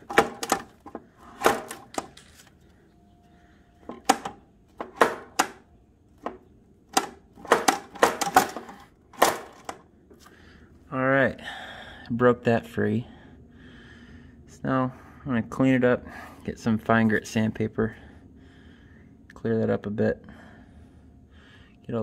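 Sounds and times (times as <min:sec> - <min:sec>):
sharp metal clicks and knocks: 0:00.0 - 0:02.4, 0:03.8 - 0:09.8.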